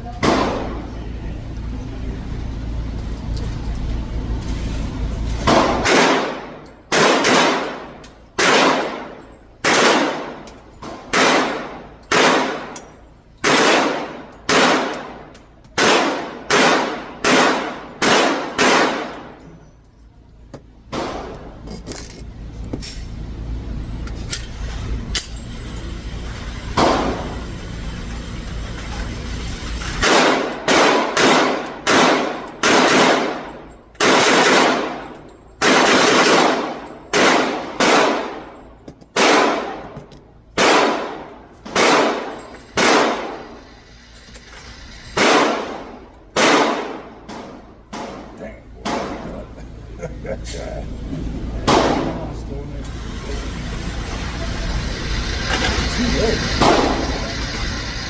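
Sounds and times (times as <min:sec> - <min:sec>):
pistol shots echoing: 0:05.6 - 0:10.5, 0:11.1 - 0:12.8, 0:13.4 - 0:19.4, 0:30.0 - 0:38.5, 0:39.1 - 0:40.0, 0:40.6 - 0:43.5, 0:45.2 - 0:49.3, 0:51.6 - 0:52.3.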